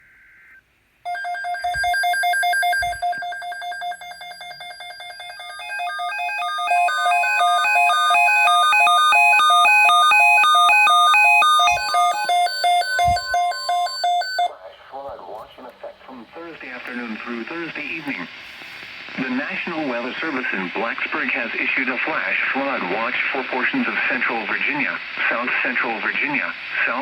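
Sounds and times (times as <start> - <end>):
steady electronic tone: 0.1 - 14.5.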